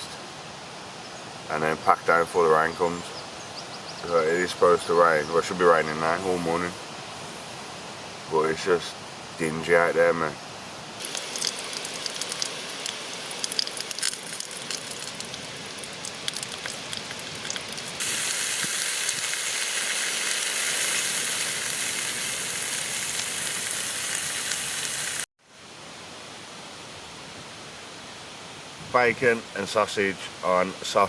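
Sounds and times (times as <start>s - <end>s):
meat sizzling in a pan: 11.0s - 25.3s.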